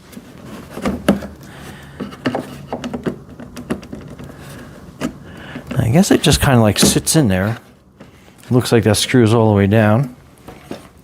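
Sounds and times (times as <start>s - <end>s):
parts knocking and clicking: 0.7s - 5.8s.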